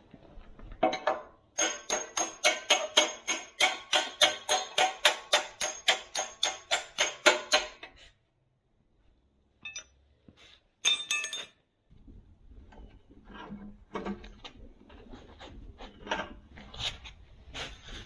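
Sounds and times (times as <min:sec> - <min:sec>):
hammer striking steel pin: 0:01.6 - 0:07.8
metal clanks: 0:10.8 - 0:11.6.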